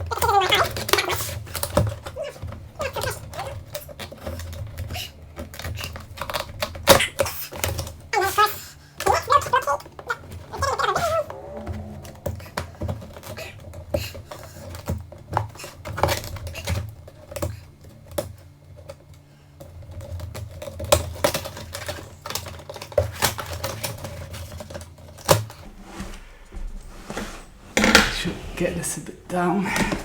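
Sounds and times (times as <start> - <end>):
packing clicks and knocks: 0.0 - 9.6, 14.6 - 25.6.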